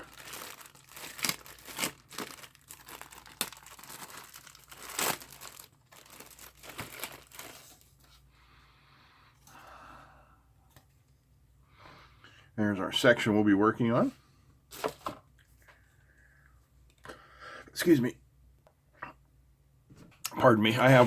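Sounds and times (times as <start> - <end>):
plastic packaging crinkling: 0.0 - 8.1, 14.7 - 15.2.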